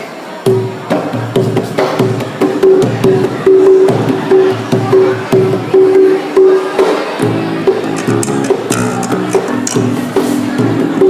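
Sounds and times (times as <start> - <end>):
hand drums: 7.3 - 11.0
repeated pitched note: 7.8 - 10.0.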